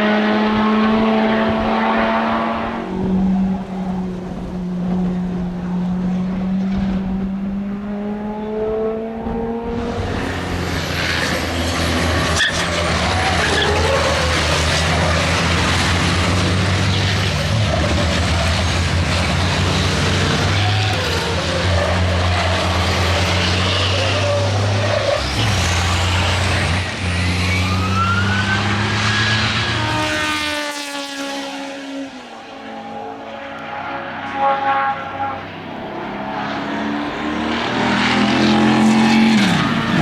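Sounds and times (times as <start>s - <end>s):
racing engines on a circuit: 0.0s - 40.0s.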